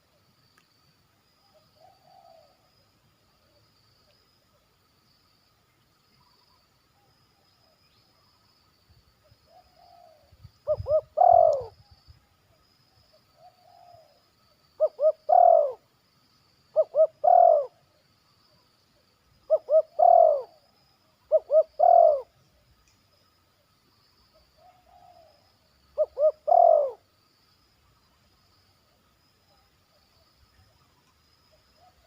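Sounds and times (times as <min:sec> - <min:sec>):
dove cooing: 0:01.8 - 0:02.6, 0:09.5 - 0:11.8, 0:14.8 - 0:15.8, 0:16.8 - 0:17.8, 0:19.5 - 0:20.6, 0:21.3 - 0:22.3, 0:26.0 - 0:27.0.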